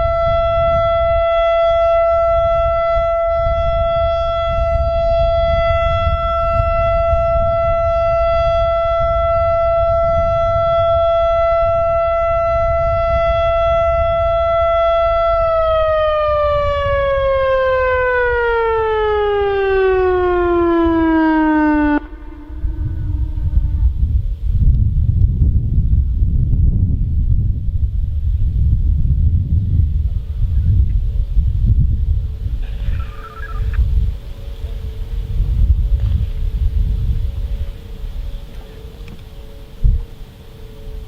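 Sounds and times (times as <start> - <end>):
warning siren alert tone: 0.0 - 24.2, 33.1 - 41.0.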